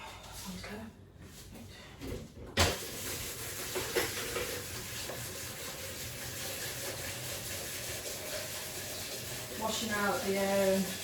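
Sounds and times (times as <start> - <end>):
tap water running into sink: 2.6 - 11.0.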